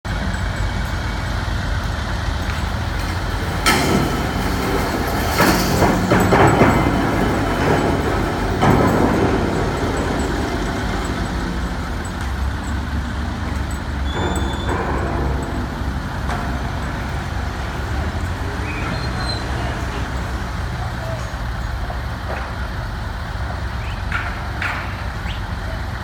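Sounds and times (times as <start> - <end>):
construction machinery diesel rumble: 0.0 - 26.0
metal knocks: 0.1 - 22.8.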